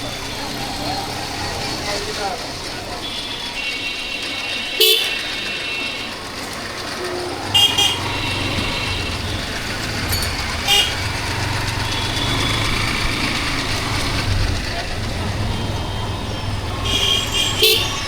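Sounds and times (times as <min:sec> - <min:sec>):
motorcycle road and engine noise: 0:00.0 - 0:18.0
vehicle horn beeps: 0:03.0 - 0:14.3, 0:15.1 - 0:18.0.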